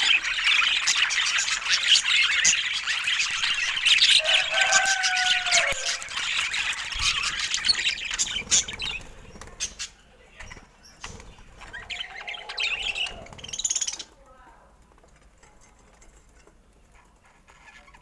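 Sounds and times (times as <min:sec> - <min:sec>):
budgerigars chirping: 0:00.0 - 0:14.1.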